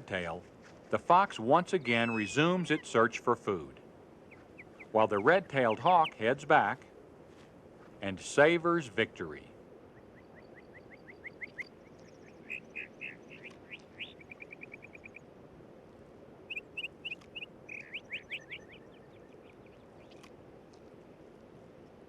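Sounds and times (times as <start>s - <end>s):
birds chirping: 1.2s - 3.3s, 4.2s - 6.8s, 10.0s - 15.2s, 16.5s - 20.2s
fast bird trill: 1.8s - 2.8s, 4.3s - 6.3s, 12.3s - 15.2s, 16.5s - 19.4s.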